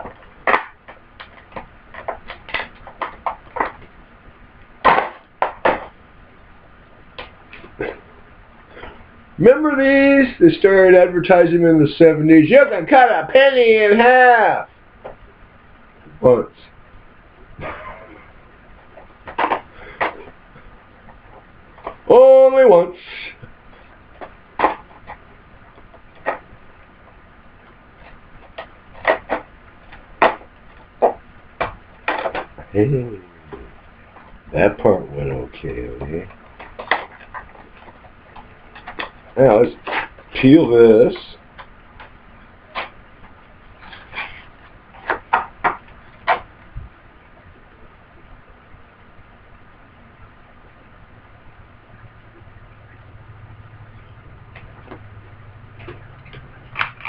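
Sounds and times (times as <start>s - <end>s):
clicks and taps of packaging: 0.0s - 3.9s.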